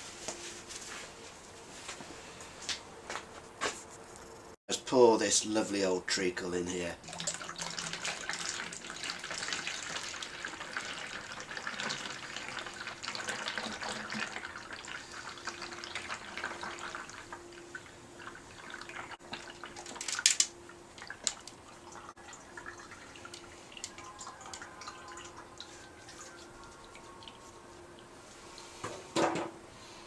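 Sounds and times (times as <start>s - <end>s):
oil pouring: 7.0s - 26.4s.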